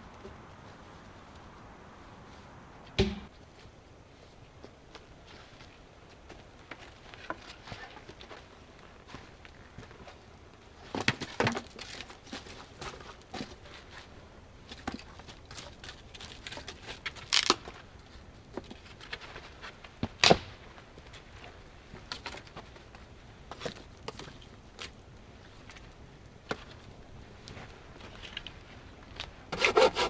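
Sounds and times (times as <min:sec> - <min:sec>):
crackling and rustling: 0:04.6 - 0:30.0
dry wood snapping: 0:15.8 - 0:17.6.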